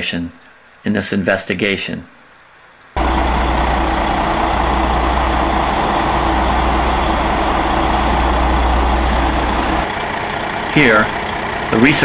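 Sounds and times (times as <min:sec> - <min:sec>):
diesel engine running: 0:03.0 - 0:12.0.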